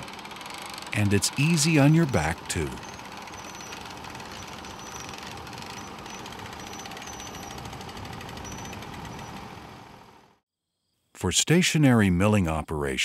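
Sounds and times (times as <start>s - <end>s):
small gasoline engine running: 0.0s - 10.4s.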